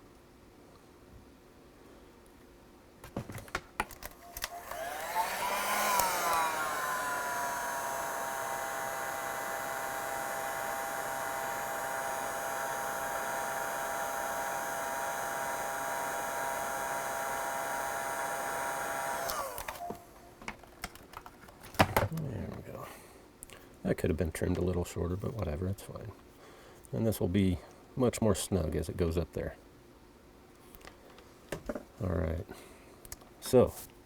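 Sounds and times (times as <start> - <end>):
heat gun fan blowing: 4.0 - 20.2.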